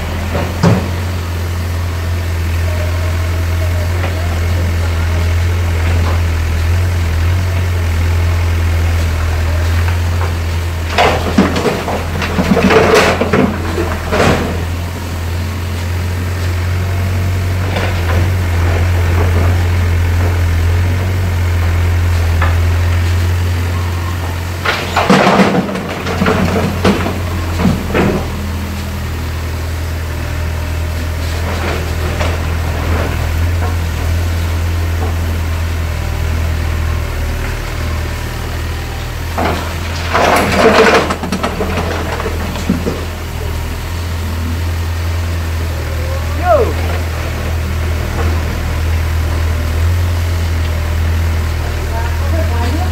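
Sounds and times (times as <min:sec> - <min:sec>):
diesel engine running: 0:00.0 - 0:52.9
rubble crashing and knocking: 0:09.8 - 0:15.0, 0:24.4 - 0:28.6, 0:31.3 - 0:35.5, 0:39.2 - 0:43.4.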